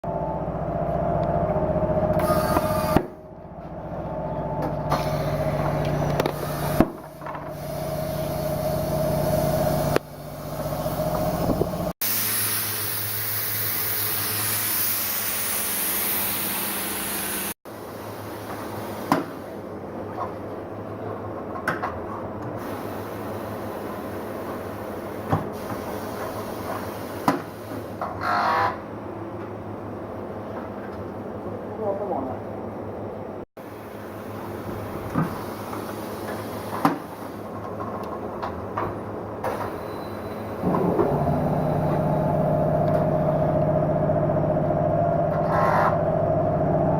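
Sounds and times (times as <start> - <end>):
small car engine starting and idling: 0.0 - 12.0, 39.4 - 46.9
steady low hum: 40.6 - 46.9.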